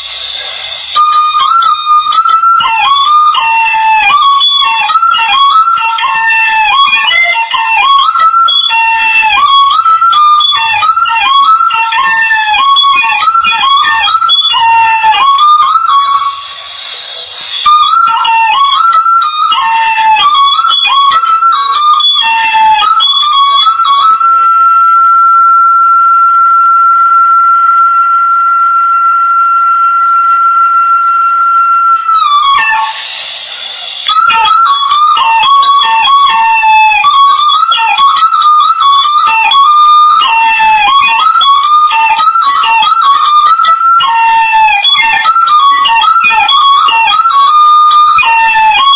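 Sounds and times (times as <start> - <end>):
breathy hiss: 0.0 - 1.0, 16.0 - 17.7, 32.9 - 34.1
bamboo pipe melody: 0.0 - 48.9
soft hiss: 8.7 - 25.3.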